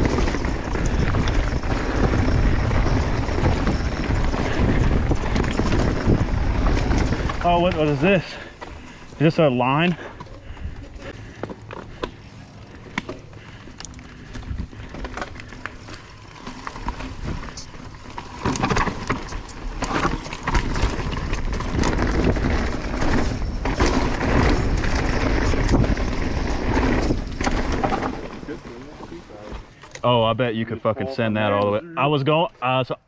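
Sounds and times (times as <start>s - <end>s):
bike tyres rolling over rock: 0.0s - 30.7s
rushing rumble of riding bike: 0.0s - 30.7s.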